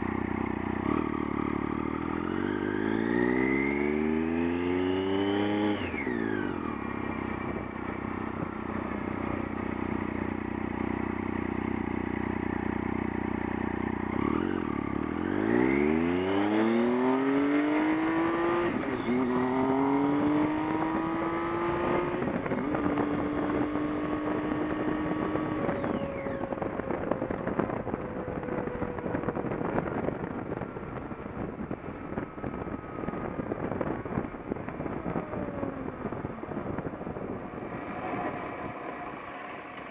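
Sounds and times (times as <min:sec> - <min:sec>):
vehicle engine revving: 0:35.8 - 0:39.9.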